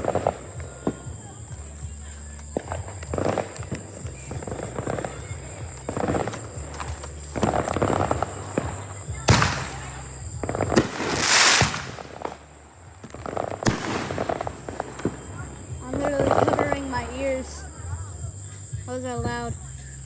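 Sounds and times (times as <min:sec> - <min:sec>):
hissing crackle: 0:00.0 - 0:17.7
fireworks crackling bursts: 0:00.0 - 0:20.0
sharp firework bang: 0:09.3 - 0:12.4, 0:13.0 - 0:15.1.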